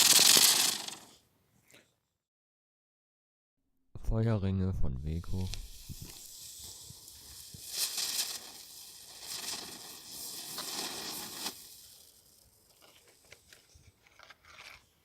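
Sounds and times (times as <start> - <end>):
firework sparks hissing: 0.0 - 1.2, 5.5 - 13.4.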